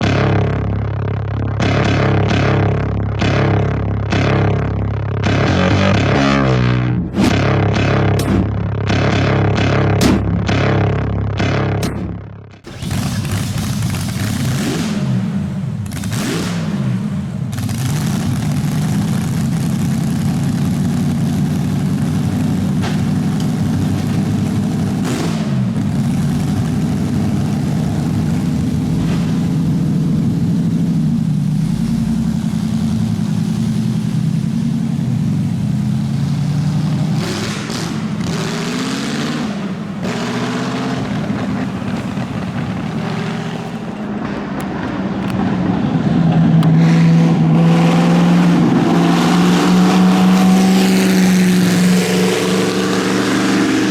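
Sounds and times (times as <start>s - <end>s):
racing car engine revving: 0.0s - 53.9s.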